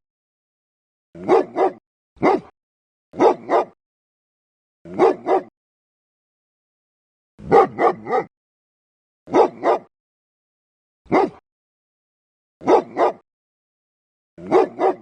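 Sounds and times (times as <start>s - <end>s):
dog barking deeply: 1.2s - 2.5s, 3.2s - 3.8s, 4.9s - 5.5s, 7.4s - 8.3s, 9.3s - 9.9s, 11.1s - 11.4s, 12.6s - 13.2s, 14.4s - 15.0s.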